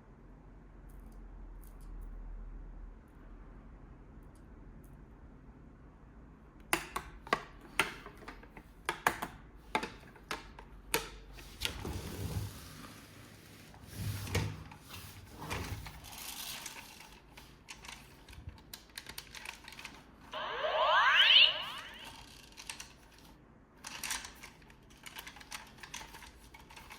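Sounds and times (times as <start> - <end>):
plastic toy parts clicking: 16.2 - 20.0, 23.8 - 26.9.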